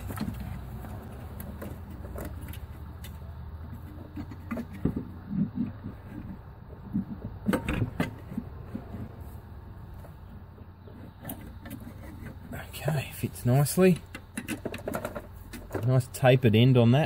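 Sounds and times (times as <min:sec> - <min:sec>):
steady low hum: 0:00.0 - 0:17.0
metal clinks and knocks: 0:13.8 - 0:16.0.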